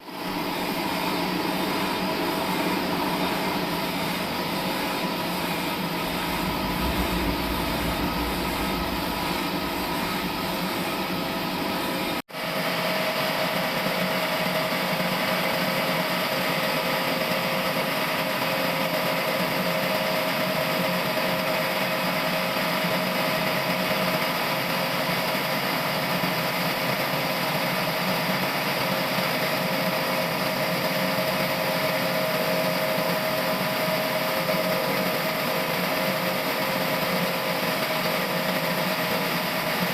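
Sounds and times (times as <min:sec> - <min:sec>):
machinery whine: 0:01.9 - 0:12.2.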